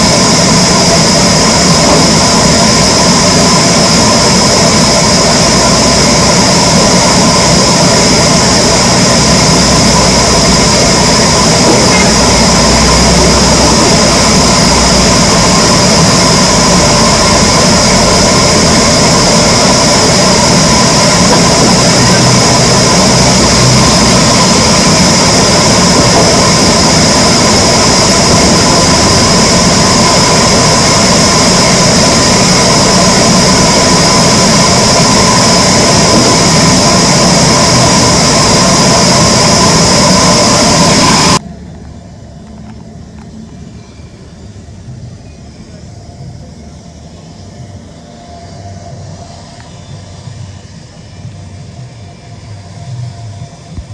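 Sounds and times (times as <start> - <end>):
wood-cutting saw machinery running: 0.0 - 41.4.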